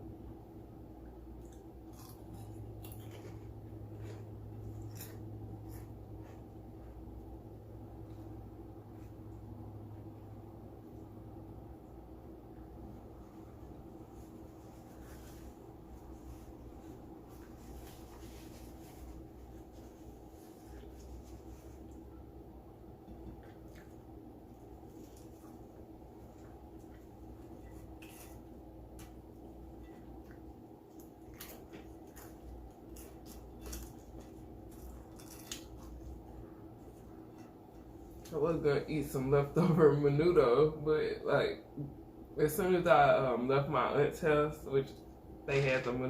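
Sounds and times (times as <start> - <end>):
steady low hum: 0.0 - 46.0
close-up chewing and mouth sounds: 1.0 - 9.4, 22.8 - 38.4.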